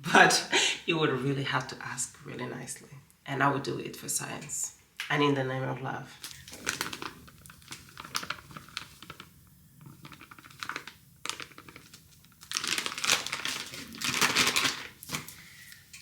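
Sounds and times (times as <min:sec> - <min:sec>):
bag crinkling: 0:06.2 - 0:15.8.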